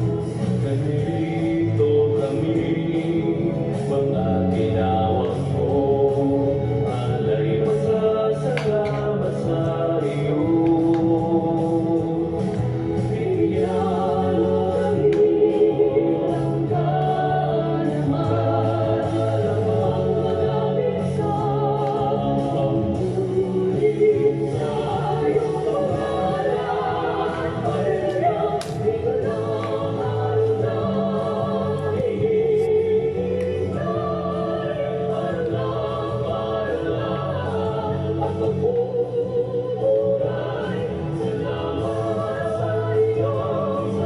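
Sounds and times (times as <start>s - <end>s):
choir singing a slow hymn: 0.0s - 44.0s.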